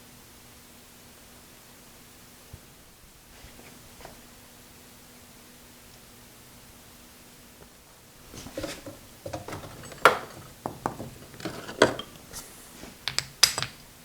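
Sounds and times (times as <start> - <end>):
metal tools clinking and tapping: 8.4 - 12.4, 13.0 - 13.8.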